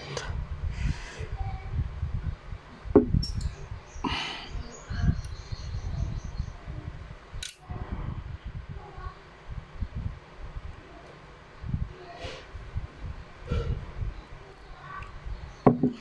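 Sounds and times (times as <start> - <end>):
pistol parts clicking: 7.4 - 7.6, 14.5 - 14.8
metal scrape: 13.5 - 13.8.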